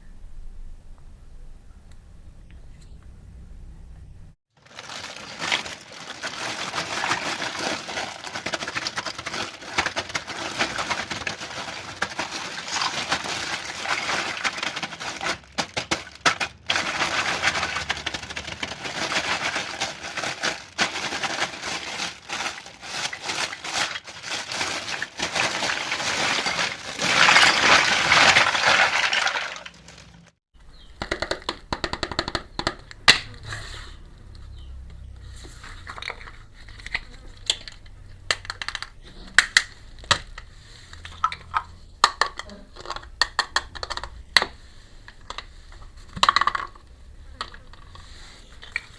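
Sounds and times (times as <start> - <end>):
plastic packaging crackling: 4.6 - 30.4
small plastic pieces clicking: 4.7 - 30.2, 35.9 - 40.4.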